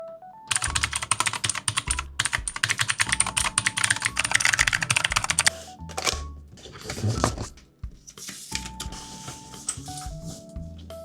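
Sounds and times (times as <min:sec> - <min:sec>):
fast typing on mechanical keyboard: 0:00.5 - 0:06.2
sharp keystroke clicks: 0:00.5 - 0:06.2.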